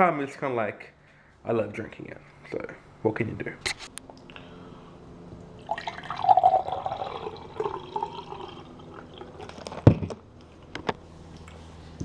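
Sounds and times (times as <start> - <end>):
liquid pouring from a bottle: 5.7 - 9.5.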